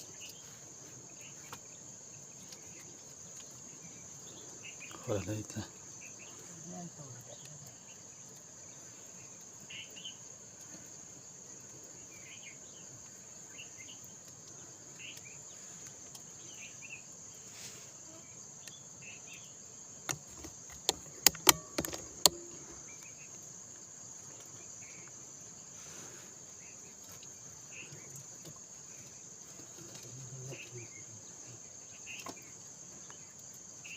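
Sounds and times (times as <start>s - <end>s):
faint chirps: 0.0s - 33.9s
insects droning: 0.0s - 33.9s
sharp clicks: 20.1s - 22.8s.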